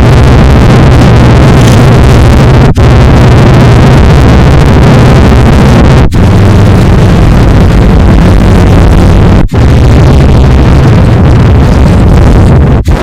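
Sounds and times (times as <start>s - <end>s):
distorted vocoded sneeze: 0.0s - 13.0s
low buzzing hum: 0.0s - 13.0s.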